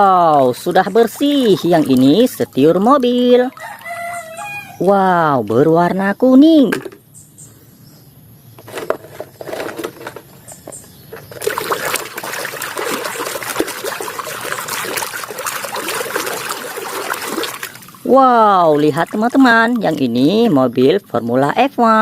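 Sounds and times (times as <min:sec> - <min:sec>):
water running and splashing: 0:00.0 - 0:04.8, 0:11.2 - 0:20.6
toy knocking and rubbing: 0:08.6 - 0:11.4.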